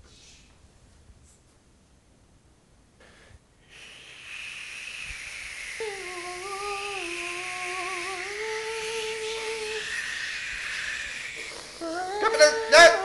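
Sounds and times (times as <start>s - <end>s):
woman making breathy hiss: 0.0s - 0.6s, 3.0s - 13.0s
wavering hummed tone: 5.3s - 13.0s.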